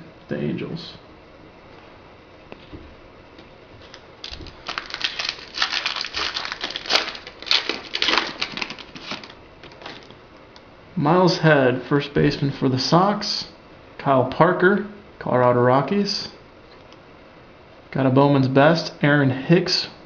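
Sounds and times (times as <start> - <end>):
foil wrapper crinkling and tearing: 3.9 - 10.1.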